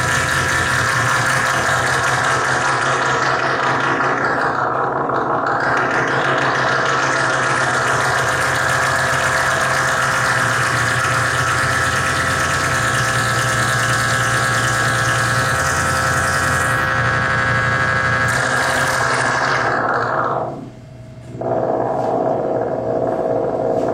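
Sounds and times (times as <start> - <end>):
harsh noise music: 0.0 - 23.9
low hum: 0.0 - 23.9
whining held tones: 0.0 - 23.9.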